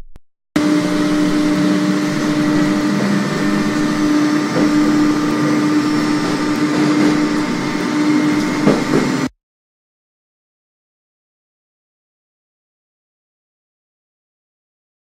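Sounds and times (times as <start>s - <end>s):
machine humming: 0.0s - 9.3s
rushing noise: 0.6s - 9.3s.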